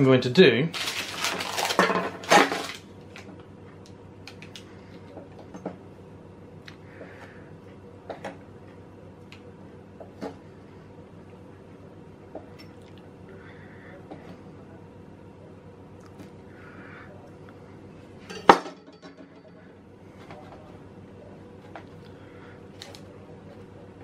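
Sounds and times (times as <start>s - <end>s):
faint steady hum: 0.0s - 24.0s
utensils and dishes clicking: 18.3s - 19.7s.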